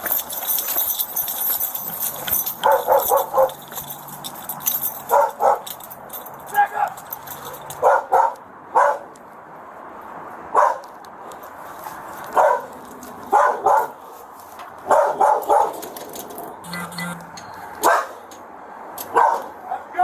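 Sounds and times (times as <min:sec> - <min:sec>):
dog barking: 0:02.6 - 0:03.6, 0:05.1 - 0:05.7, 0:07.8 - 0:09.1, 0:10.5 - 0:10.9, 0:12.4 - 0:12.7, 0:13.3 - 0:14.0, 0:14.9 - 0:15.8, 0:17.8 - 0:18.2, 0:19.1 - 0:20.0.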